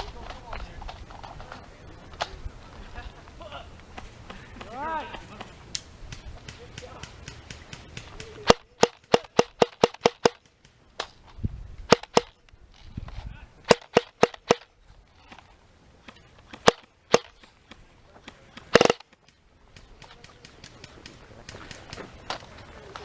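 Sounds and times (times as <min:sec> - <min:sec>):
airsoft gun shots: 0:06.1 - 0:10.8, 0:11.9 - 0:12.4, 0:13.7 - 0:14.7, 0:16.5 - 0:17.4, 0:18.7 - 0:19.2.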